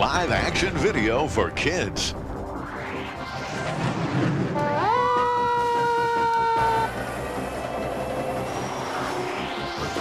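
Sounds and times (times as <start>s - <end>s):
background music: 0.0s - 10.0s
vehicle horn blaring: 4.5s - 5.0s.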